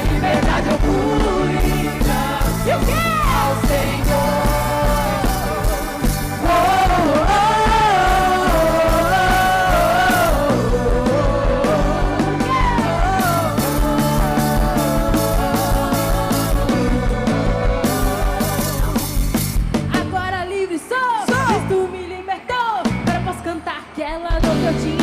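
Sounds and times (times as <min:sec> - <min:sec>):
person singing: 0:00.0 - 0:19.2
bass: 0:00.0 - 0:20.6, 0:21.3 - 0:22.0, 0:22.8 - 0:25.0
drums: 0:00.0 - 0:25.0.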